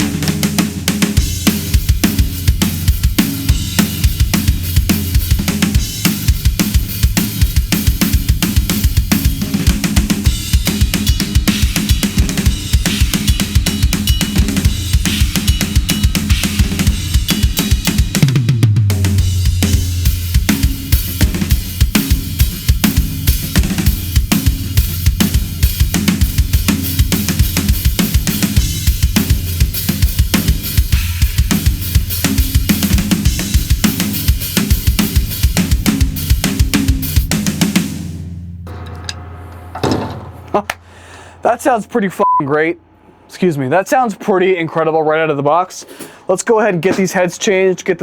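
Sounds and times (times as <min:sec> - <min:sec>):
drum kit groove: 0:00.0 - 0:42.8, 0:43.4 - 0:48.0
snare drum hits: 0:38.7 - 0:40.9.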